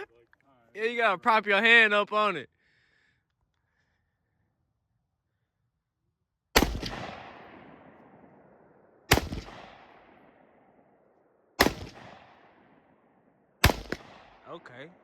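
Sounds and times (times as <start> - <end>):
gunshots with long echo: 6.5 - 15.0.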